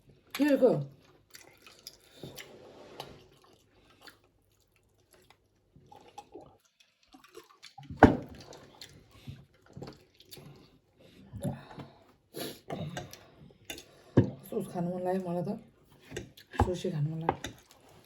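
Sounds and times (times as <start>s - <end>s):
slurping and chewing noodles: 0.0s - 14.2s.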